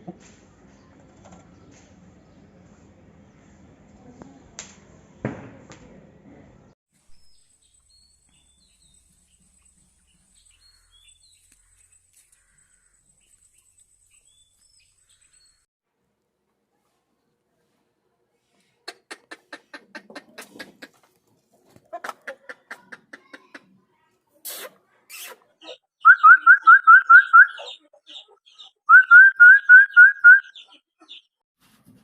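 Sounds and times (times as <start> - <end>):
small birds chirping: 7.0 - 15.7, 24.4 - 31.4.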